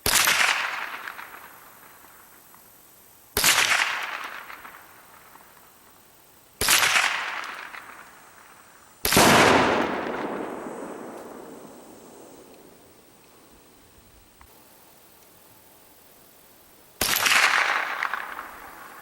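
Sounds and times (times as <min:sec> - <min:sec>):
loud gunshot bangs with echo: 0:09.0 - 0:12.3.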